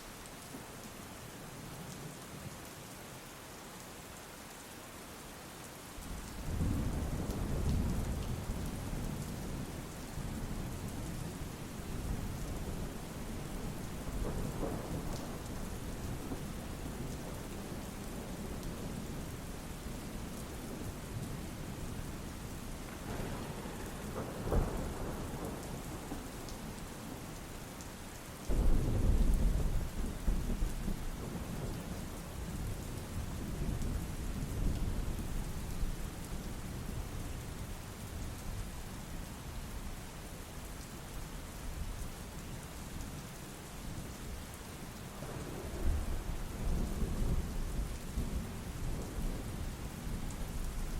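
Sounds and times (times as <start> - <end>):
steady rain: 0.0 - 50.9
thunder: 12.6 - 18.5, 22.8 - 26.8, 28.5 - 32.0, 45.1 - 49.6.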